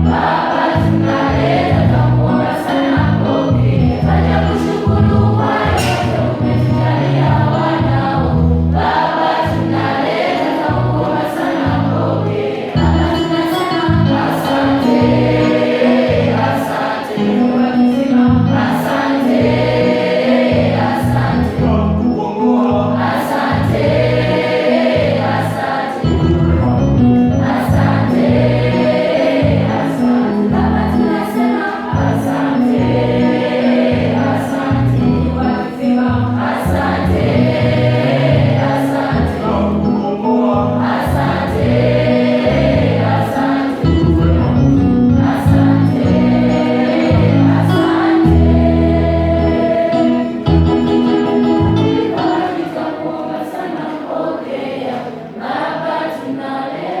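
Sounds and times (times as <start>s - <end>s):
choir singing gospel song: 0.0s - 57.0s
steady beat: 4.6s - 7.0s.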